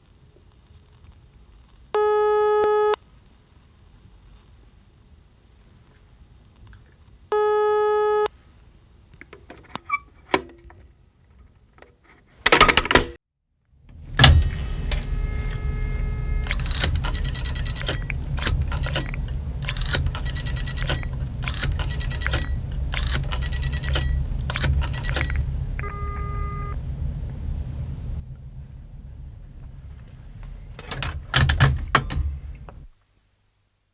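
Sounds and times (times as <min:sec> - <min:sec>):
telephone tone: 0:02.0 - 0:03.0, 0:07.3 - 0:08.3, 0:14.2 - 0:28.2
low hum: 0:13.8 - 0:32.9
handset clicks and knocks: 0:14.2 - 0:26.6
rotary dial clicking: 0:14.2 - 0:28.2.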